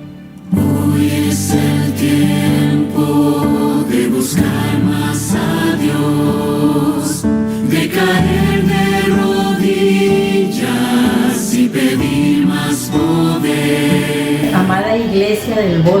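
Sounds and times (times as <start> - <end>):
choir singing held notes: 0.0 - 16.0
accompaniment: 7.8 - 16.0.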